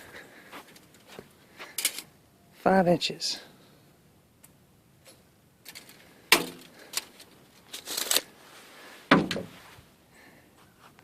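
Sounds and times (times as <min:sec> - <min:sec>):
tools clicking and rattling: 0:04.4 - 0:08.2.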